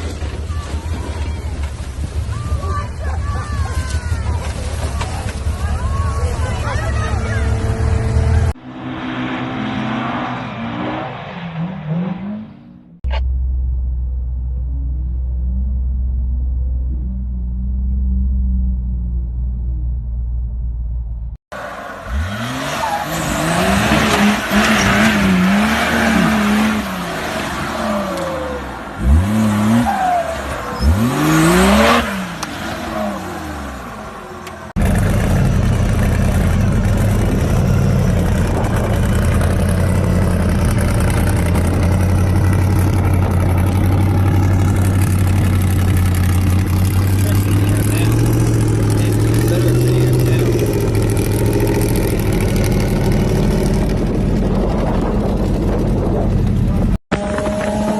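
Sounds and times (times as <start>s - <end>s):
engine revving hard: 22.0s - 34.1s, 34.7s - 54.2s
engine running steadily: 33.7s - 57.9s.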